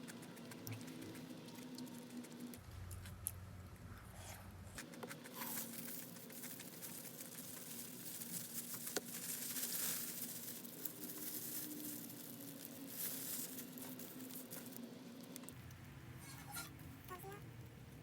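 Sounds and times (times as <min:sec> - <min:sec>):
packaging crinkling and rustling: 0:05.4 - 0:15.6.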